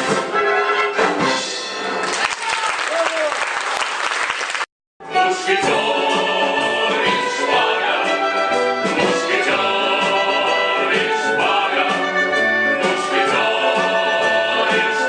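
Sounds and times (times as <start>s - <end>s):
orchestra playing: 0.0s - 2.2s, 5.0s - 15.0s
singers holding long notes: 5.1s - 15.0s.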